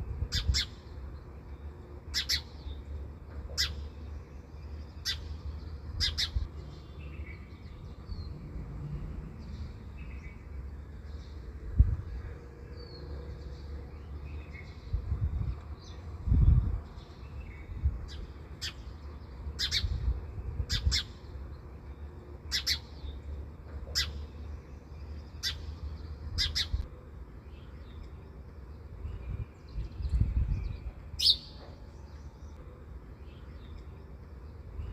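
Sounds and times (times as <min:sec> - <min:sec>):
bird chirping: 0:00.3 - 0:11.5, 0:20.6 - 0:32.6.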